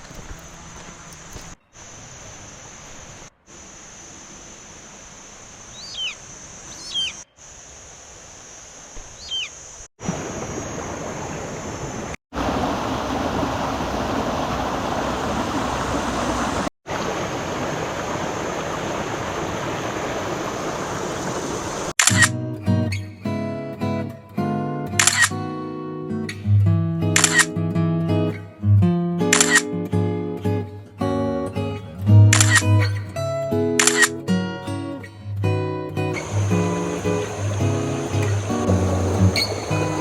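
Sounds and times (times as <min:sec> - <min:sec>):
waterfall rushing: 0:10.0 - 0:21.9, 0:36.2 - 0:40.0.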